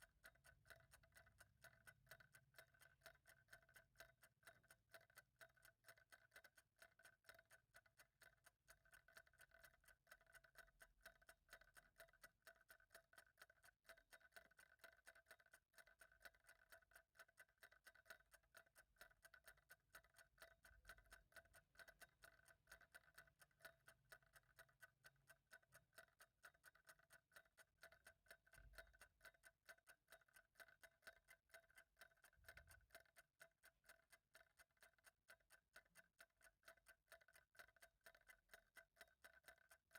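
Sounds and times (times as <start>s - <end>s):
clock ticking: 0.0s - 39.9s.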